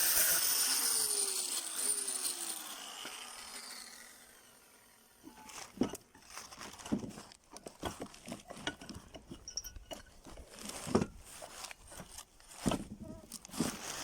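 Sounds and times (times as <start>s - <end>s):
metal parts clicking and scraping: 5.3s - 14.0s.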